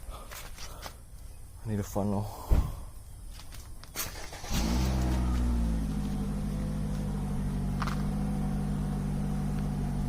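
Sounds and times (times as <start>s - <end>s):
motorcycle engine idling: 5.2s - 10.0s.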